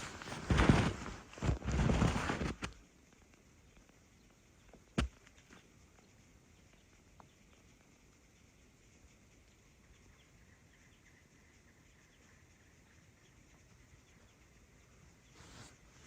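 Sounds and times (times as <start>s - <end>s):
footsteps crunching in snow: 0.0s - 2.8s.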